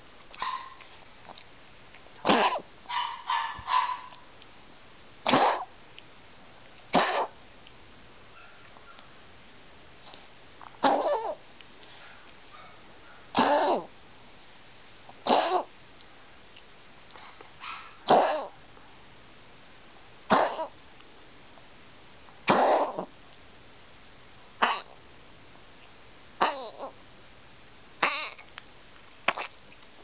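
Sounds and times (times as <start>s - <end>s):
pet coughing: 2.2s - 4.1s, 5.2s - 5.7s, 6.9s - 7.4s, 10.8s - 11.4s, 13.3s - 13.9s, 15.2s - 15.7s, 18.0s - 18.6s, 20.3s - 20.7s, 22.4s - 23.1s, 24.6s - 25.0s, 26.4s - 26.9s, 28.0s - 28.4s.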